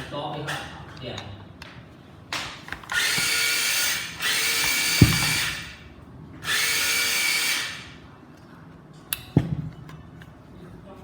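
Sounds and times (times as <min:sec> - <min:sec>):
sharp knock: 0:05.0 - 0:05.6.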